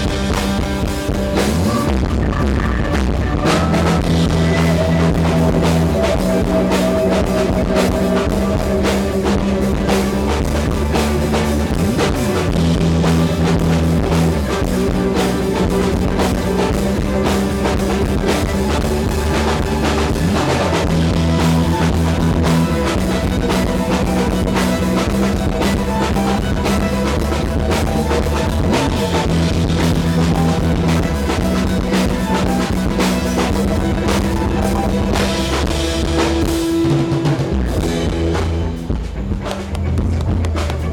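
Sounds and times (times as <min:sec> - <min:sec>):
rock band playing live: 0:00.0 - 0:40.9.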